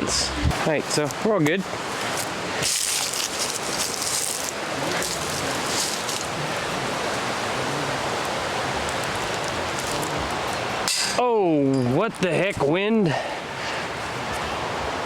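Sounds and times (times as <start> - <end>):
strong wind rushing: 0.0 - 10.8.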